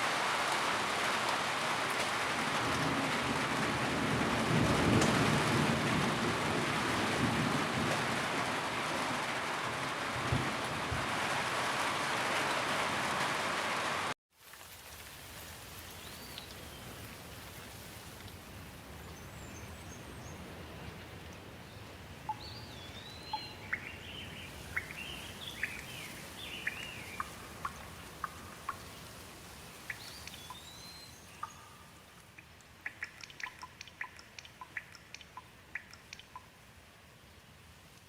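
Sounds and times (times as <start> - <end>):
steady rain hiss: 0.0 - 38.0
firewood crackling: 14.4 - 19.1
birds singing: 21.7 - 29.1, 29.9 - 31.9.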